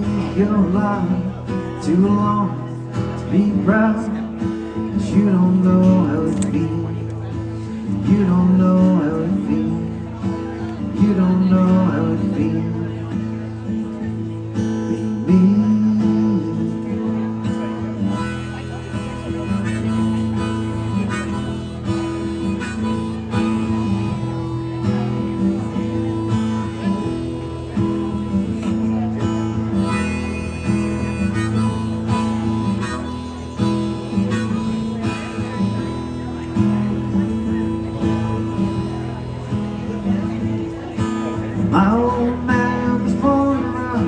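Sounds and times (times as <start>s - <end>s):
acoustic guitar strumming: 0.0s - 44.0s
harmonica solo: 17.8s - 27.4s, 29.2s - 40.3s.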